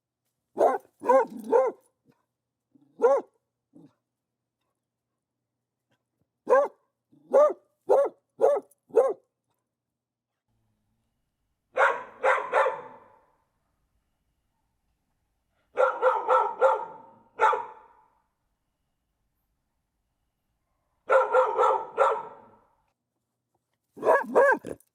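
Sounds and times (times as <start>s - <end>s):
dog barking: 0.6s - 1.9s, 2.9s - 3.9s, 6.4s - 9.3s, 11.7s - 13.3s, 15.7s - 18.1s, 21.0s - 22.7s, 24.0s - 24.8s.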